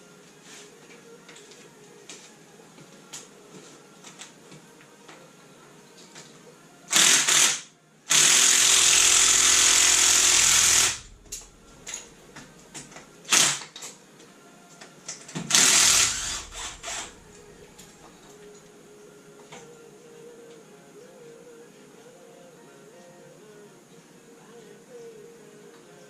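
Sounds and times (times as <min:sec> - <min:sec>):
power tool running in bursts: 0:06.9 - 0:12.1, 0:15.5 - 0:17.9.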